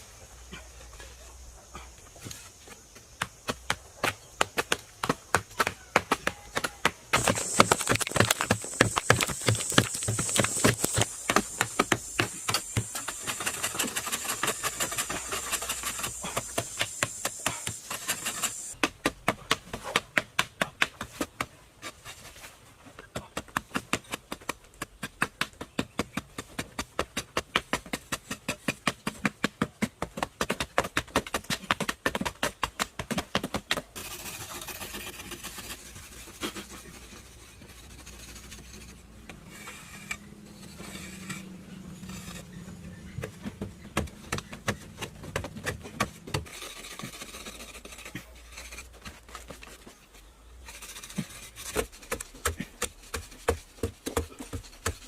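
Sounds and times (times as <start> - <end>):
hissing noise: 7.0 - 18.8.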